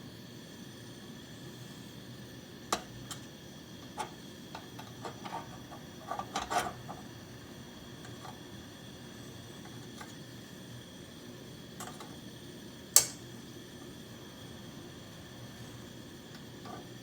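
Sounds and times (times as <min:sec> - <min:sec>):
camp stove burner hissing: 0:00.0 - 0:17.0
light metallic clicks and taps: 0:13.0 - 0:13.2.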